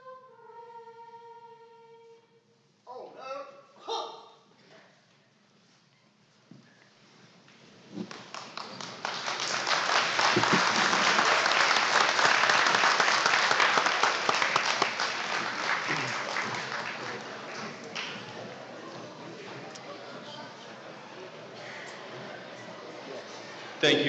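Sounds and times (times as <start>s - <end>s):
audience applauding: 7.9s - 19.7s.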